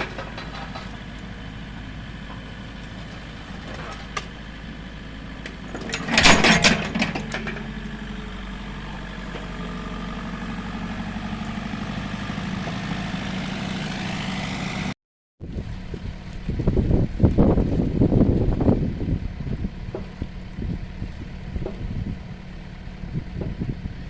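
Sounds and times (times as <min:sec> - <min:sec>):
loud metal clanking: 0:00.0 - 0:01.1, 0:05.6 - 0:10.1
excavator diesel engine running: 0:00.0 - 0:24.0.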